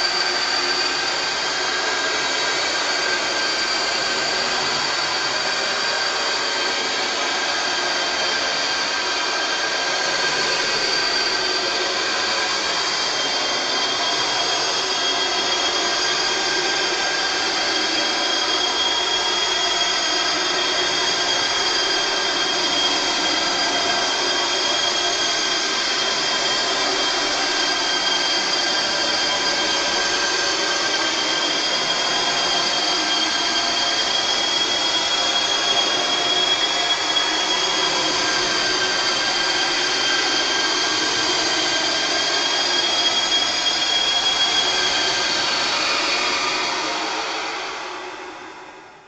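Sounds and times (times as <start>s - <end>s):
harsh high-pitched whine: 0.0s - 49.0s.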